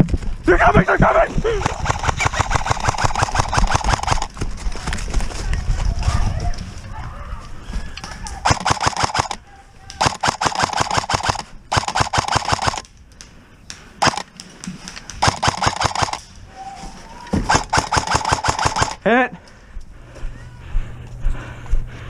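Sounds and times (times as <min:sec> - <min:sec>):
gearbox whirring: 0:01.4 - 0:04.3
airsoft rifle firing bursts: 0:01.5 - 0:04.3, 0:08.4 - 0:09.4, 0:10.0 - 0:12.9, 0:14.0 - 0:14.3, 0:15.2 - 0:16.2, 0:17.5 - 0:19.1.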